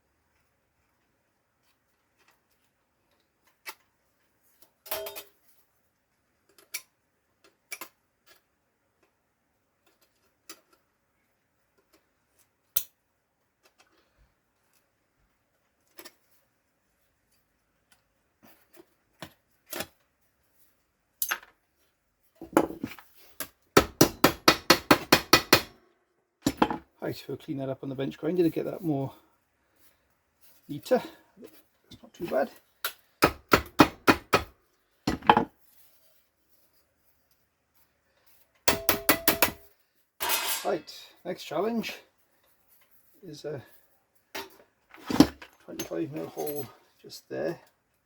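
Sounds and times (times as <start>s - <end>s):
metal clatter: 40.2s - 40.7s.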